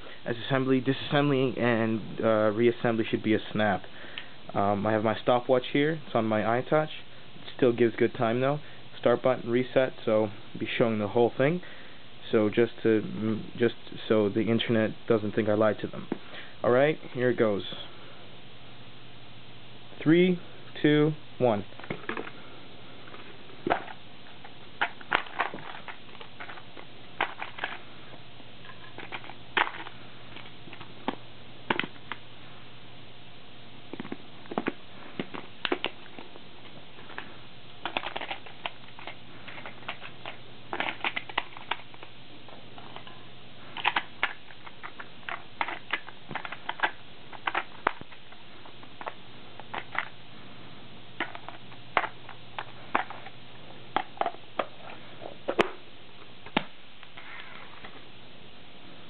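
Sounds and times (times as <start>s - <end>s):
faint steady hum: 0.0s - 59.0s
plastic parts clicking and snapping: 37.1s - 42.1s, 42.8s - 50.1s, 51.2s - 54.7s.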